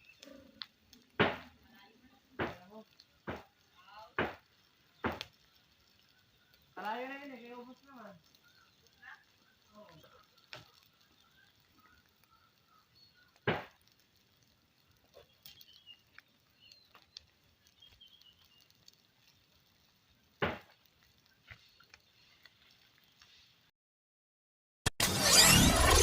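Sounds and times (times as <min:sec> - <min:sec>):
loud sharp thud: 0:01.2 - 0:01.5, 0:13.5 - 0:13.7.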